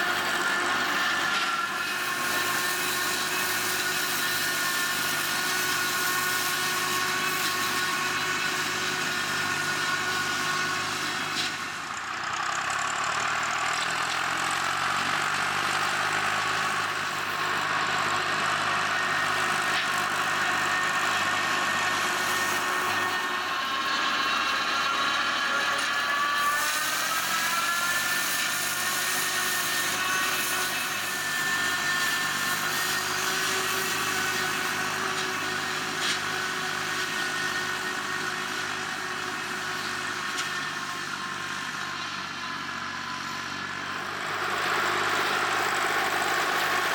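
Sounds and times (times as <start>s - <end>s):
tractor engine and flail mower: 0.0s - 46.9s.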